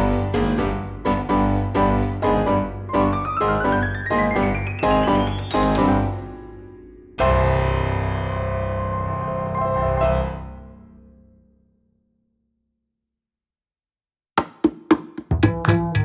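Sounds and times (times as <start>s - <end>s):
piano music: 0.0s - 10.8s.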